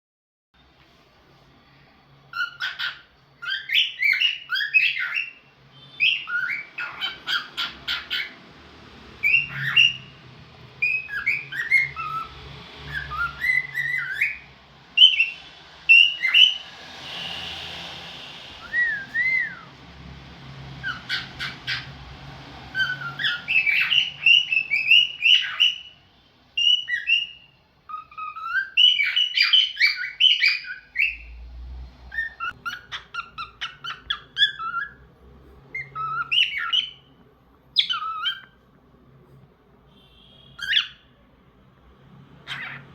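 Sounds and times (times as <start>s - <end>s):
cockatiel chirping and squawking: 2.3s - 17.3s, 18.5s - 19.8s, 20.8s - 31.2s, 32.1s - 35.1s, 35.7s - 38.6s, 40.0s - 41.1s, 42.4s - 42.9s
whistled note: 15.0s - 19.8s.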